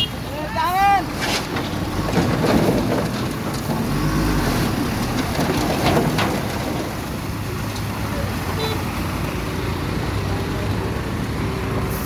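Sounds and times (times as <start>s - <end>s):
heavy machinery engines rumbling: 0.0s - 12.0s
metal clanks: 1.0s - 7.9s.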